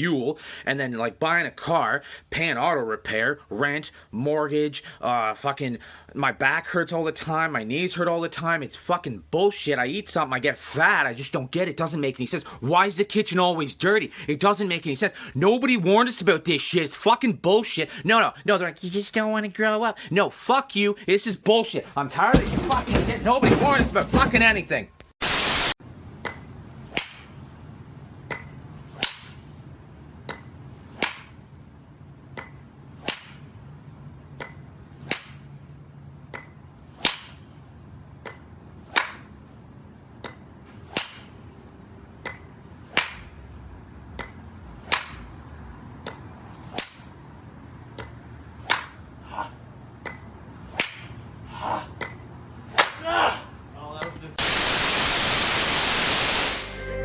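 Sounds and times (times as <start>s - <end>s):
burst of static noise: 25.2s - 25.8s, 54.4s - 57.0s
sharp cracks: 26.9s - 27.4s, 28.3s - 29.4s, 31.0s - 31.4s, 32.4s - 33.5s, 34.4s - 35.5s, 37.0s - 37.5s, 40.9s - 41.4s, 42.2s - 43.4s, 46.7s - 47.2s, 48.0s - 49.0s, 50.1s - 51.2s, 52.0s - 53.1s
low hum: 55.8s - 57.0s.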